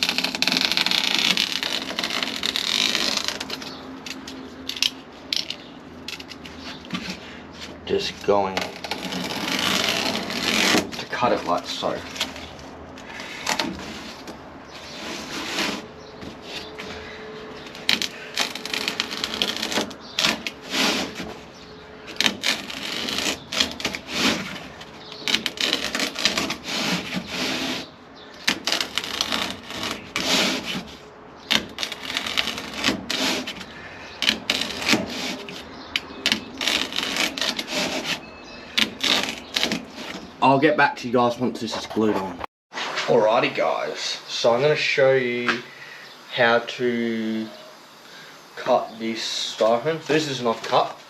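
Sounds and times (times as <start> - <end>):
material being handled: 0.0 - 40.4
knife scraping through sheet: 8.6 - 17.0, 17.8 - 21.4, 22.1 - 27.9, 28.5 - 40.2.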